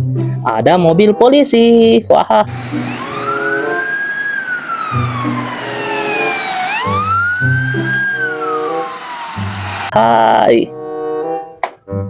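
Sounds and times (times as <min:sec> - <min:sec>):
police siren wailing: 0:02.5 - 0:10.0.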